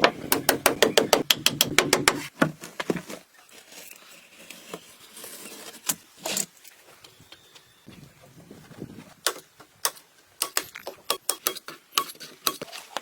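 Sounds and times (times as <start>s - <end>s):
sharp knocks: 0.3s - 2.2s.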